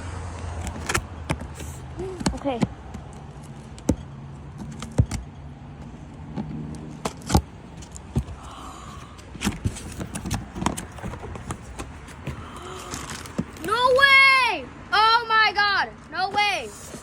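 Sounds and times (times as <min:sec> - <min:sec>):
cardboard packaging being handled: 0:00.6 - 0:03.8, 0:07.7 - 0:13.8.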